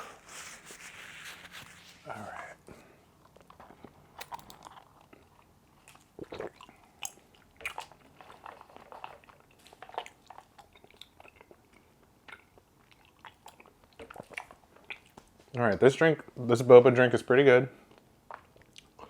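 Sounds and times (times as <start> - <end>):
person chewing food: 0.0 - 15.6, 17.8 - 19.0
mouth clicks and smacks: 3.3 - 15.4, 17.9 - 19.0.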